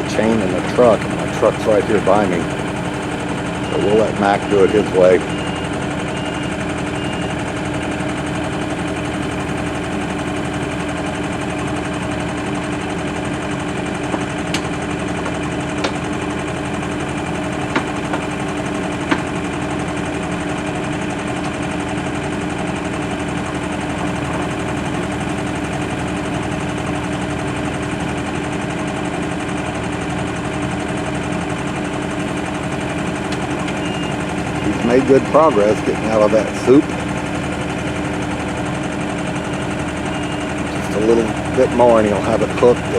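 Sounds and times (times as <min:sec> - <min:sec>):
excavator diesel engine running: 0:00.0 - 0:42.9.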